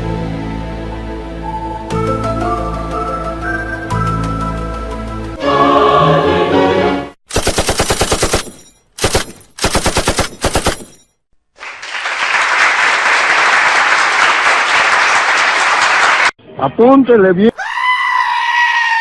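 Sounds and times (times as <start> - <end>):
machine gun bursts: 7.3 - 11.0.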